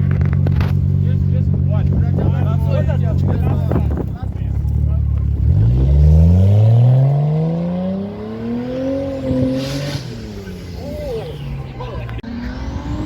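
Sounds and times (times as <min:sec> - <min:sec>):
car engine accelerating hard: 0:00.0 - 0:13.0.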